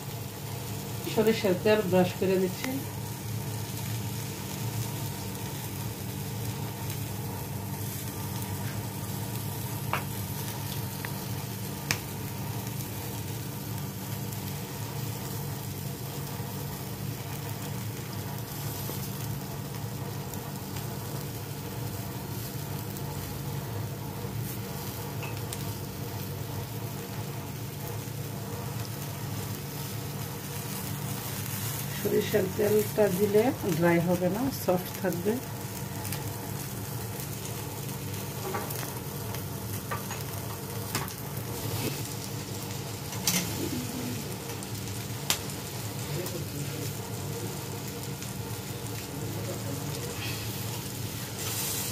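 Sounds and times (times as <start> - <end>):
chicken sizzling in a pan: 0.0 - 51.9.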